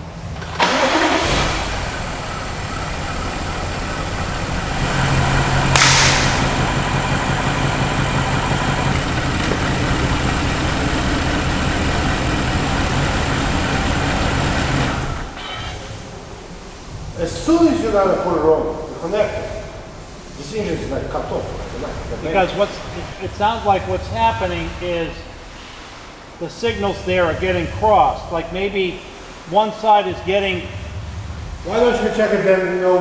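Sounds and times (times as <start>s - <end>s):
loud hiss: 0.0s - 32.7s
engine idling roughly with misfire: 0.1s - 15.8s.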